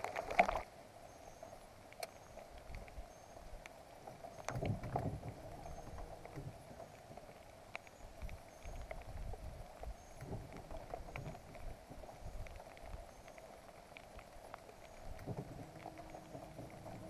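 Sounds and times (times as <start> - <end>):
muffled bumps: 10.2 - 12.5, 15.2 - 17.0.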